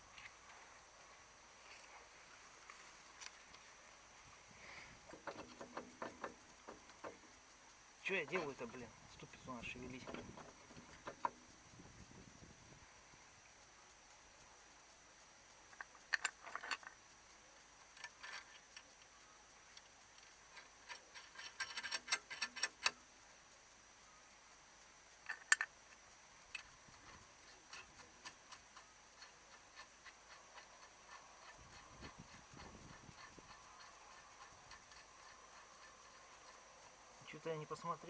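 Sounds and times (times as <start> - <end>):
small ticks: 0.0 - 38.0
faint clicks: 2.6 - 38.0
light metal knocks: 5.0 - 7.4, 8.1 - 11.6.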